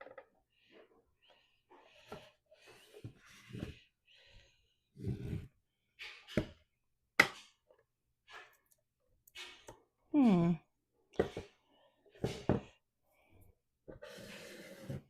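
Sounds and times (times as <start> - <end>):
person sighing: 10.2 - 10.6.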